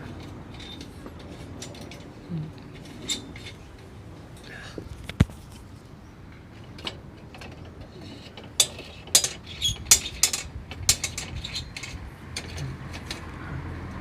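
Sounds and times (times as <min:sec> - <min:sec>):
metal lantern parts clicking: 0:06.6 - 0:13.2.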